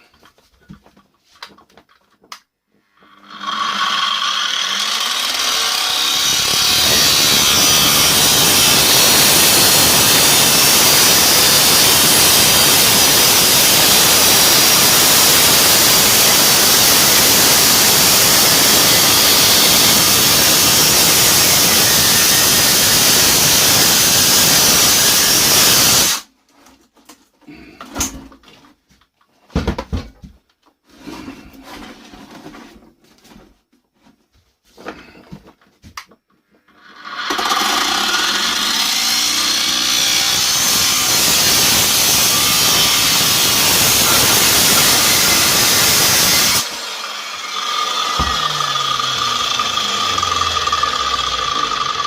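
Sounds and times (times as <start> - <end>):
angle grinder cutting metal: 2.9 - 26.3, 36.7 - 52.0.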